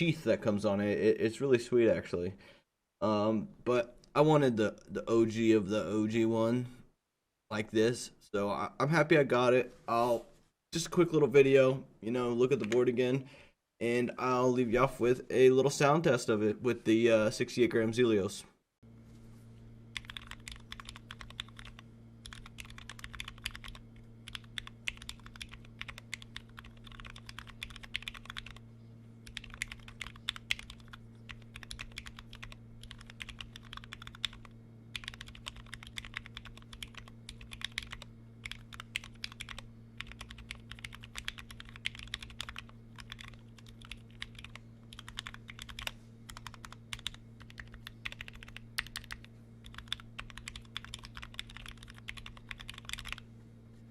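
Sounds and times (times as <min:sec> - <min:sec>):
steady low hum: 0:00.0 - 0:53.9
keyboard typing: 0:19.9 - 0:28.6, 0:29.2 - 0:53.2.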